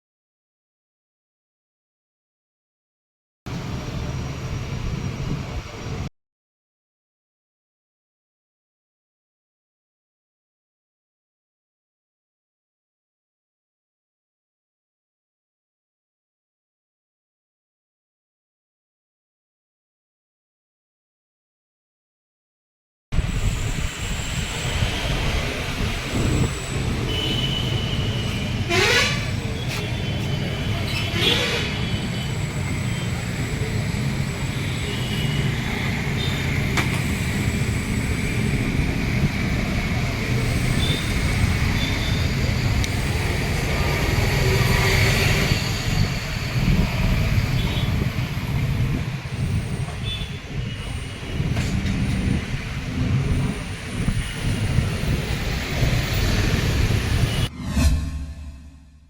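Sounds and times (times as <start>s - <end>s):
road traffic: 3.5s - 6.1s, 23.1s - 59.0s.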